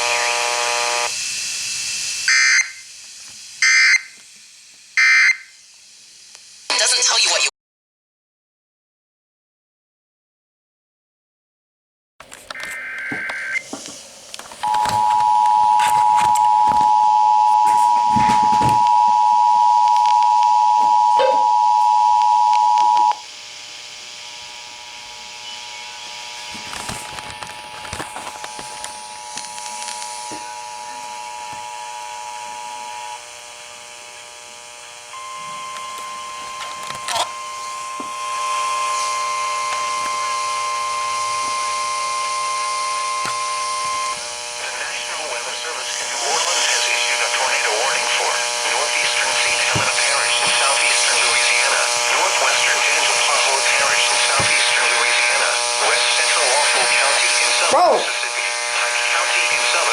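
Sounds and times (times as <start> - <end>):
steady warning alarm tone: 0.0 - 1.2, 2.2 - 2.9, 3.6 - 4.2, 5.0 - 5.6, 12.5 - 23.4, 35.0 - 59.9
radio static crackling: 0.0 - 7.5, 12.2 - 59.9
data burst: 2.3 - 2.9, 14.6 - 23.2, 35.2 - 59.9
two-tone attention signal: 12.6 - 13.6, 14.6 - 23.2, 35.2 - 42.2.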